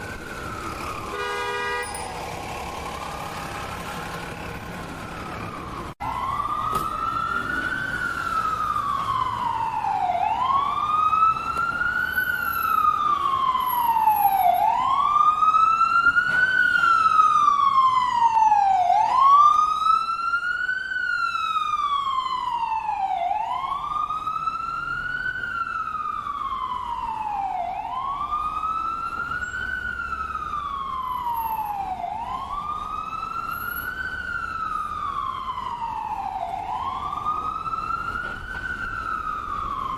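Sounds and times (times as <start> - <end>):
ambulance siren wailing: 0.0 - 39.9.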